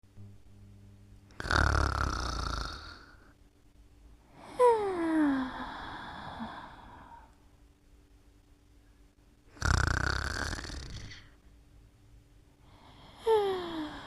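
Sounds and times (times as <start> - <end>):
person snoring: 1.3 - 3.3, 4.3 - 7.3, 9.5 - 11.4, 12.7 - 14.0.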